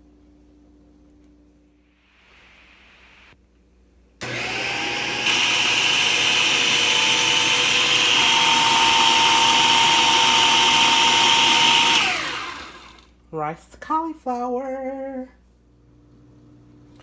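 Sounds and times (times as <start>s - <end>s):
kitchen chopper motor whine: 4.2s - 13.1s.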